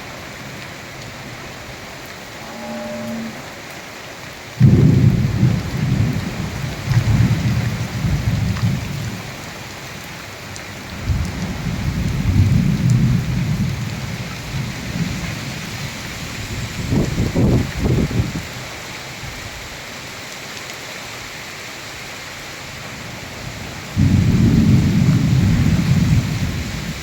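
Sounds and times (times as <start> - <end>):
steady rain: 0.0 - 27.0
thunder rumbling: 4.6 - 9.4.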